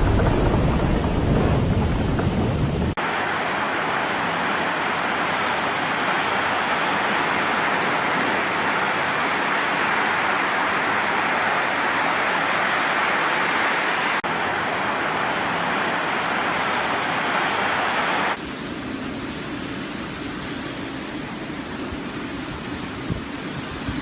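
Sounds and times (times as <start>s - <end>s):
low rumble: 0.0s - 3.0s
driving rain: 0.0s - 24.0s
storm wind: 0.0s - 24.0s.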